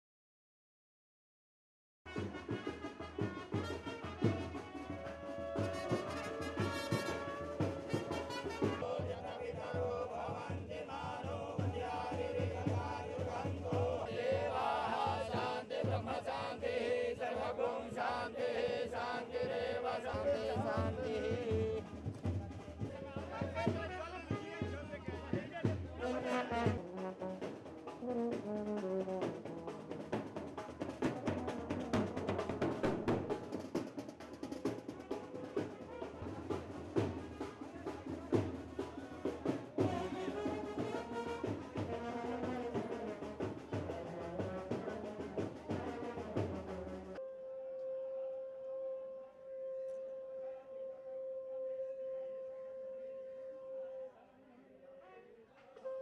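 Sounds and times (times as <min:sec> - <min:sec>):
quick irregular drumming: 0:02.1 - 0:18.2, 0:19.0 - 0:47.2
voices chanting prayers: 0:06.9 - 0:26.8, 0:36.7 - 0:47.1, 0:47.8 - 0:56.0.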